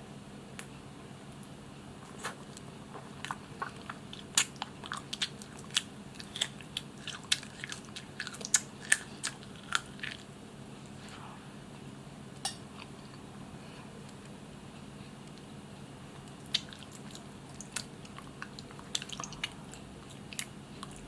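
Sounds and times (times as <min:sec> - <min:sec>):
mouth chewing food: 0:02.1 - 0:10.3, 0:16.1 - 0:21.0.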